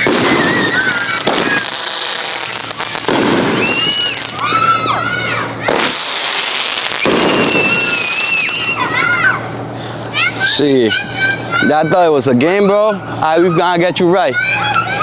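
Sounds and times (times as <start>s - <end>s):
fireworks bangs: 0.0s - 9.4s
whistling fireworks: 0.0s - 9.5s.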